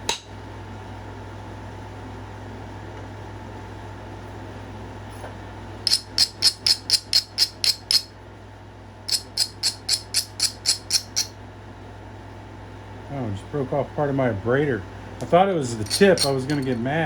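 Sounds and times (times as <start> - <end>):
steady low hum: 0.0 - 17.0
stone grinding on stone edge: 5.9 - 8.1, 9.1 - 11.3, 15.8 - 16.8.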